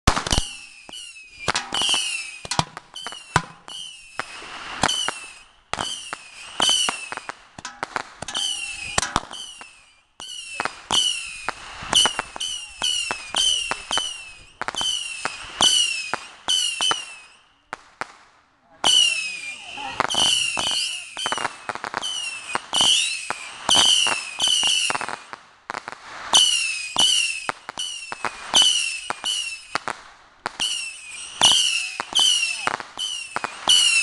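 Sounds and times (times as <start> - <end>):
firework cracking bangs: 0.0 - 18.3, 18.9 - 34.0
shrieking firework whistles: 0.1 - 17.8, 18.8 - 25.3, 26.0 - 34.0.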